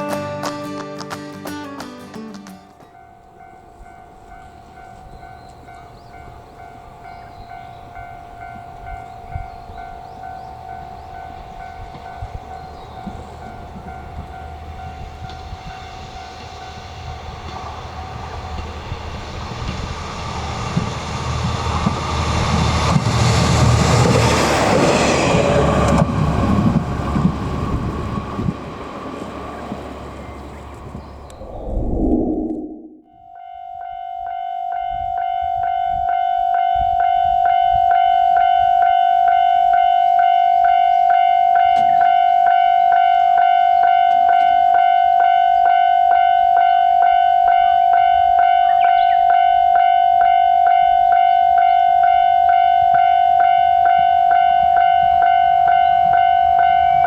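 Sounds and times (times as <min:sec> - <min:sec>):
diesel railcar passing: 0:02.7 - 0:32.0, 0:37.3 - 0:57.0
level-crossing warning bell: 0:02.8 - 0:17.1, 0:33.2 - 0:57.0.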